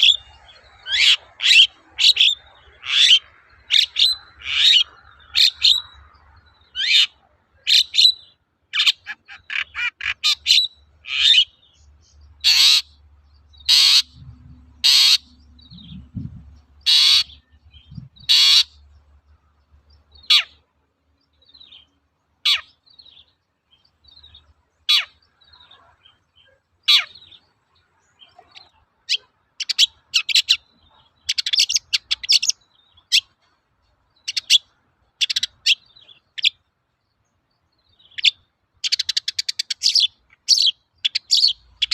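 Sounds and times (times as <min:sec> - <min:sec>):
bird chattering: 0:00.0 - 0:19.1, 0:20.0 - 0:20.6, 0:22.4 - 0:23.2, 0:28.2 - 0:33.4, 0:34.2 - 0:36.6, 0:38.0 - 0:41.9
bird harsh rasping song: 0:00.0 - 0:41.9.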